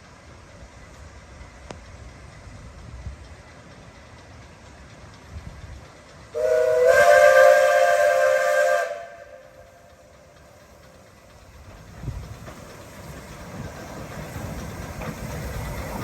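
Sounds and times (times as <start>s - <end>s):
hiss of steam: 0.0s - 16.0s
steam locomotive whistle: 6.3s - 9.9s.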